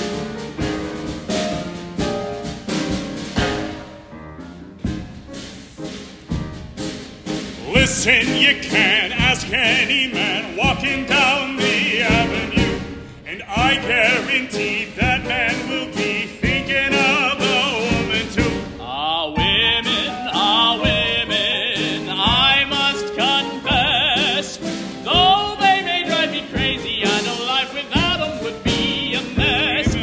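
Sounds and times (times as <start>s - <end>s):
instrumental accompaniment: 0.0s - 30.0s
man singing with vibrato: 7.6s - 30.0s.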